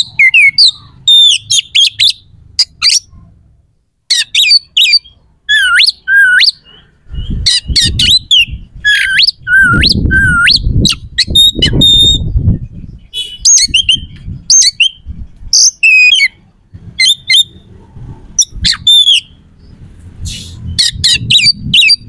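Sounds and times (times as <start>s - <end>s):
bird singing whistled song: 0.0s - 3.1s, 4.1s - 16.4s, 17.0s - 17.7s, 18.4s - 22.0s.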